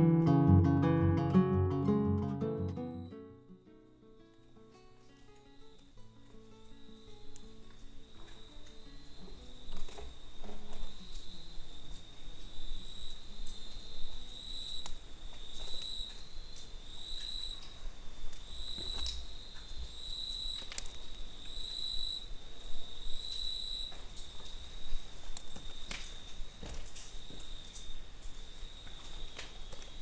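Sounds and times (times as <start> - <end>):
high-pitched insect trill: 6.6 - 26.5.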